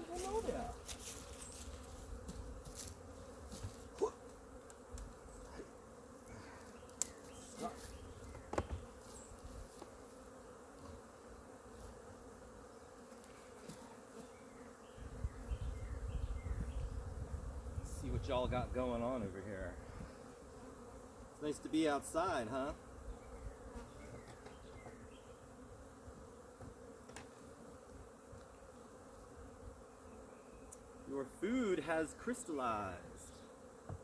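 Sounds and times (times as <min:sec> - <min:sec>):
bees buzzing: 0:00.0 - 0:34.0.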